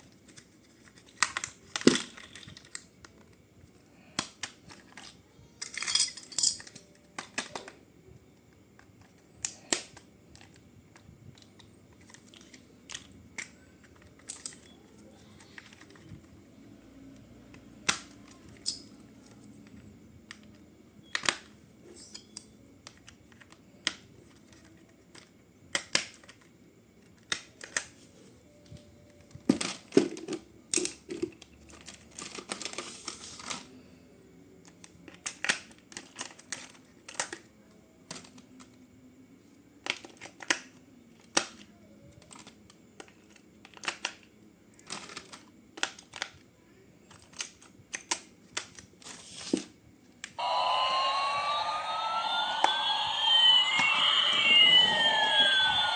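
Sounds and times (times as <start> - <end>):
toy parts and packaging clicking: 0.0 - 16.4, 17.1 - 28.0, 28.6 - 33.7, 34.6 - 38.8, 39.8 - 46.5, 47.1 - 50.4
packaging rustling crinkle: 31.7 - 33.6.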